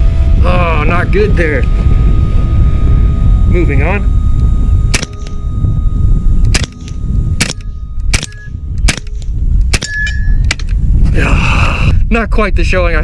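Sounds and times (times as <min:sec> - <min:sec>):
wind rumbling on microphone: 0:00.0 - 0:13.0
air rifle shots: 0:04.9 - 0:05.3, 0:06.5 - 0:10.7.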